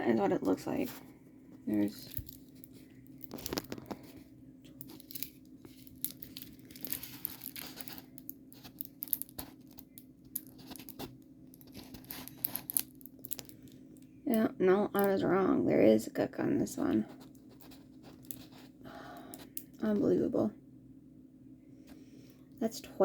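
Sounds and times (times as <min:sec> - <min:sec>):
plastic packaging crinkling: 0:01.7 - 0:13.8.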